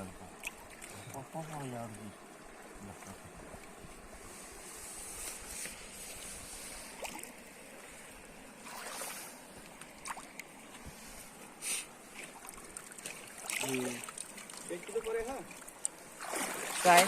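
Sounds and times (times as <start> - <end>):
river water rushing: 5.8 - 17.0.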